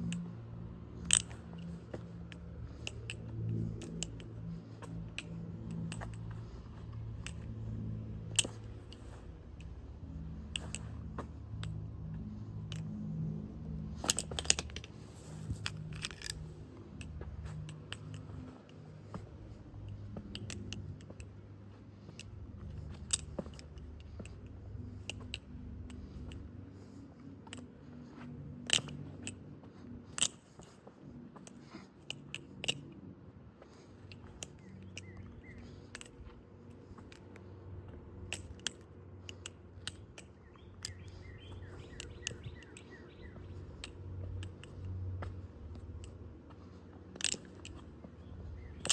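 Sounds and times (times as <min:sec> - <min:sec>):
butterfly knife metallic clicks: 0:01.0 - 0:07.5, 0:08.2 - 0:13.0, 0:13.9 - 0:21.4, 0:22.1 - 0:26.5, 0:28.6 - 0:29.4, 0:31.5 - 0:33.0, 0:34.0 - 0:37.4, 0:38.2 - 0:46.2, 0:47.1 - 0:48.9.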